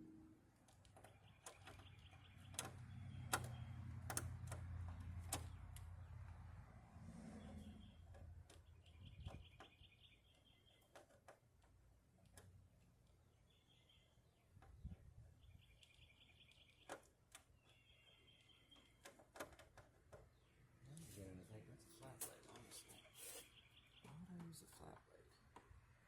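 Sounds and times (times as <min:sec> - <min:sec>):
faint clicks and taps: 0:00.6 - 0:06.4, 0:08.1 - 0:13.2, 0:15.7 - 0:20.4
bird chirping in trills: 0:07.2 - 0:10.9, 0:17.5 - 0:19.0.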